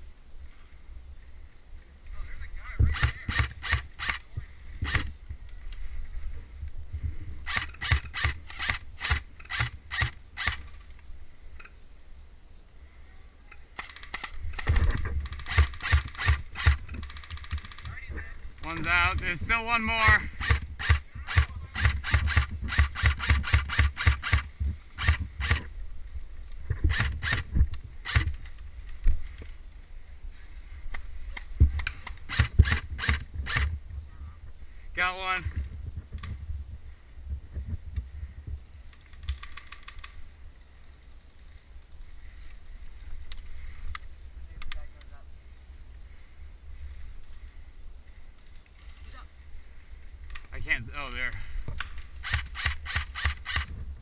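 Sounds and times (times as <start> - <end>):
airsoft gun shots: 2.9 - 4.2, 20.0 - 25.7, 31.8 - 33.7.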